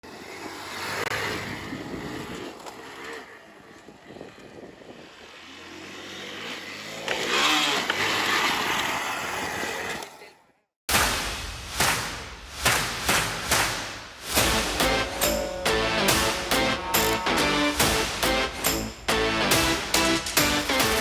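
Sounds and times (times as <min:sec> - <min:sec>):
motorcycle engine revving: 0:04.5 - 0:09.3, 0:14.3 - 0:21.0.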